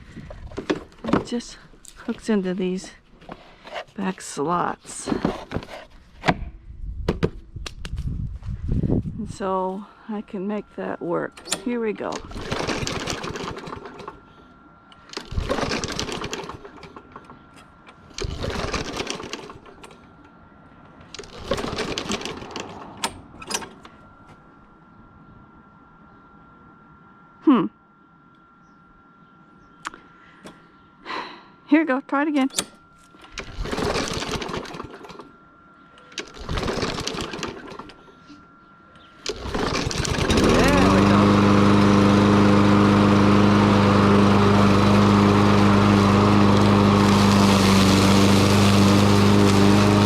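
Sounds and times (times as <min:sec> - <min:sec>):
mower recoil starter chattering: 0:11.4 - 0:14.2, 0:14.9 - 0:20.3, 0:21.0 - 0:23.9, 0:32.5 - 0:35.3, 0:36.0 - 0:38.1, 0:39.2 - 0:50.0.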